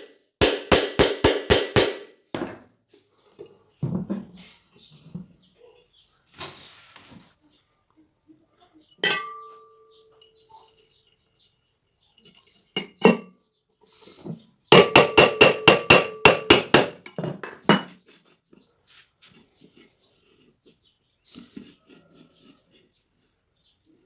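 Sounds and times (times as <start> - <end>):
hammer striking metal fan parts: 0.0 - 2.5, 9.0 - 10.4, 14.7 - 17.2.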